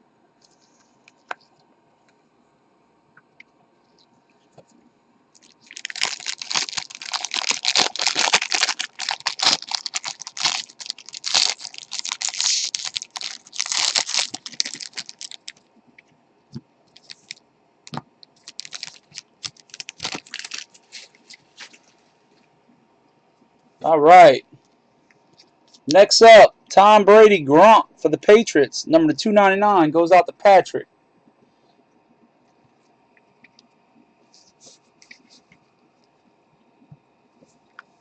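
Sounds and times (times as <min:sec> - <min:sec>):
wrappers crinkling and tearing: 0:05.4 - 0:15.6, 0:16.9 - 0:17.4, 0:18.4 - 0:22.0.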